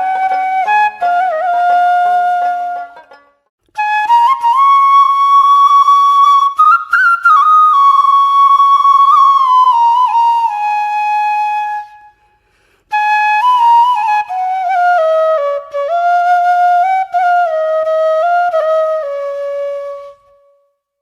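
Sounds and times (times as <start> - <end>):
solo flute-like melody: 0.0 - 20.8.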